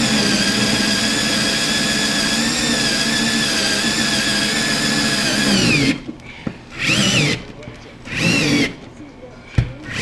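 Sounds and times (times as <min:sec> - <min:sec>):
electric drill with hole saw: 0:00.0 - 0:06.1, 0:06.7 - 0:07.5, 0:08.1 - 0:08.8.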